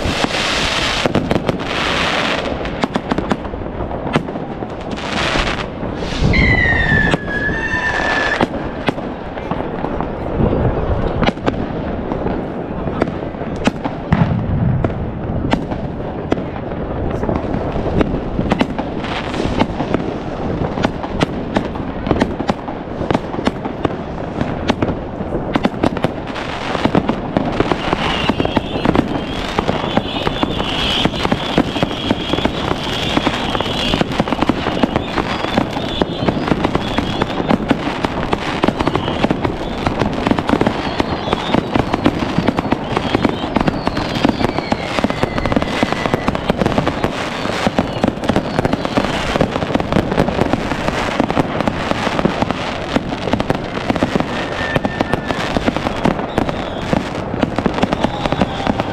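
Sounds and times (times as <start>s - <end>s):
fireworks bangs and crackles: 0.0s - 58.9s
whistling firework: 0.0s - 58.9s.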